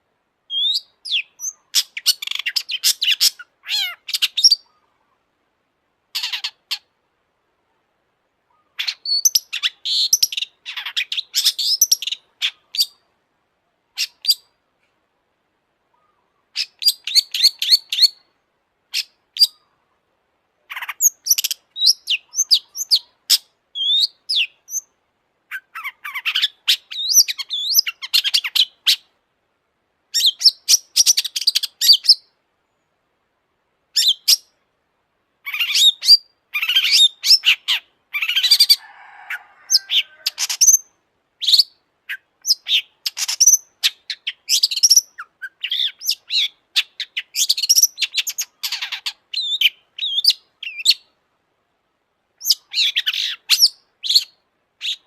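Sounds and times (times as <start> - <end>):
bird chattering song: 0.5 - 5.0, 6.2 - 6.9, 8.5 - 13.0, 13.9 - 14.5, 15.9 - 18.3, 20.7 - 29.1, 30.1 - 32.9, 35.4 - 38.8, 39.7 - 51.1, 52.4 - 55.0.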